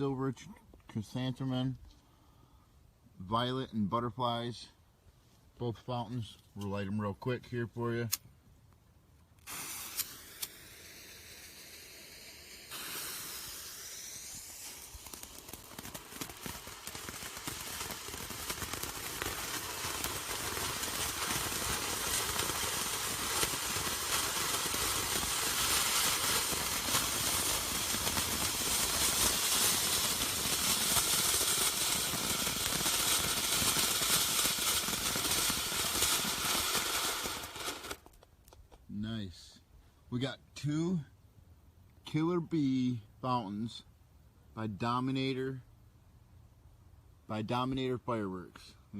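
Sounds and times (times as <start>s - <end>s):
firework fountains hissing and crackling: 9.4s - 38.2s.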